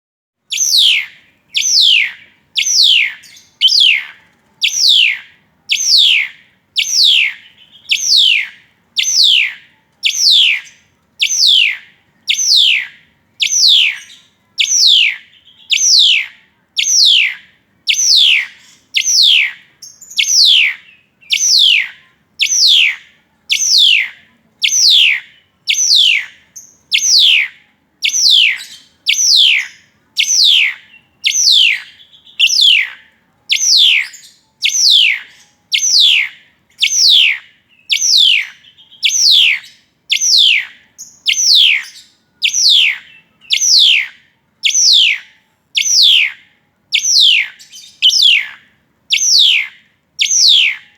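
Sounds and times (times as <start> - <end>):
starling whistling call: 0.5 - 50.9.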